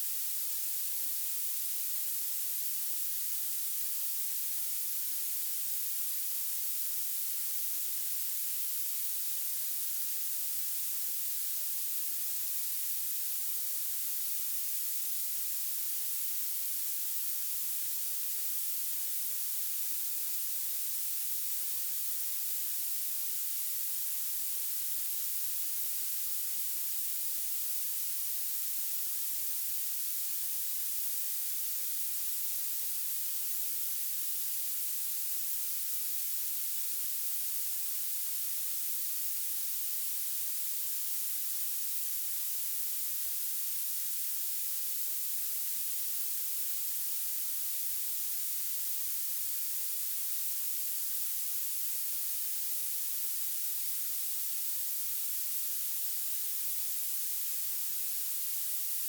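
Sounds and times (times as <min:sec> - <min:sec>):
high-pitched violet noise hiss: 0:21.7 - 0:59.0.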